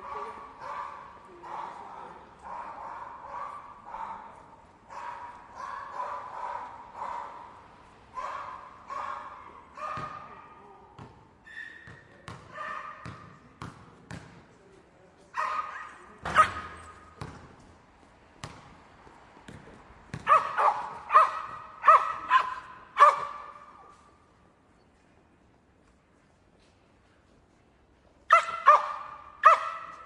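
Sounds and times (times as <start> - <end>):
dog barking and yipping: 20.3 - 23.5, 28.3 - 30.0.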